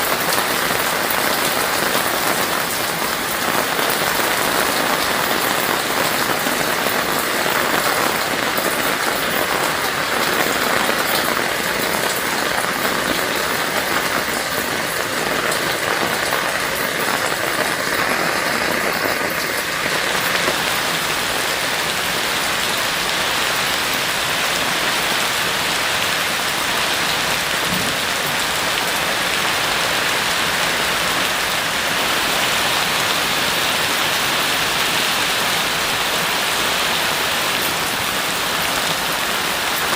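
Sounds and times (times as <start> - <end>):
heavy rain: 0.0 - 39.9.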